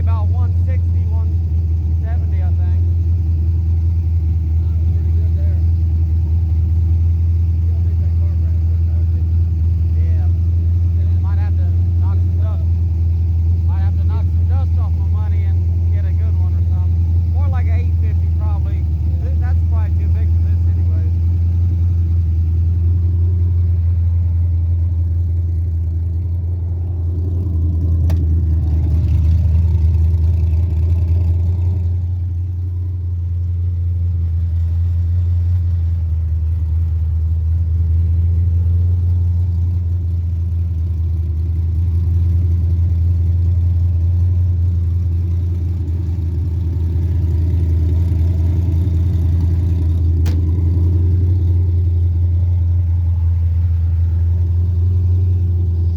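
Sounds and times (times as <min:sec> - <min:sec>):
engine running with deep drone: 0:00.0 - 0:55.9.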